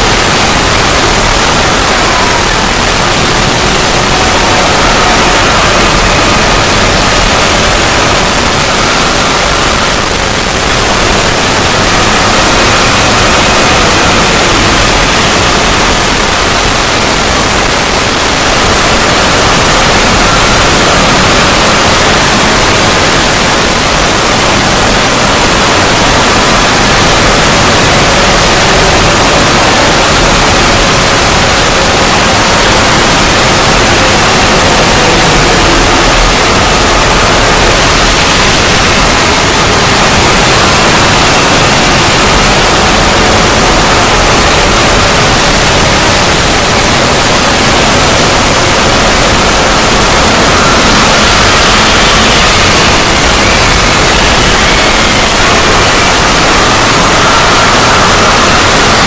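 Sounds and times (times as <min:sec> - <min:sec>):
loud static-like hiss: 0:00.0 - 0:59.0.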